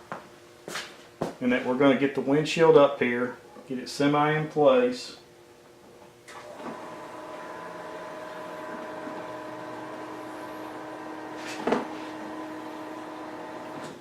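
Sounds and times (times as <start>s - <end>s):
small motor humming: 6.3s - 14.0s.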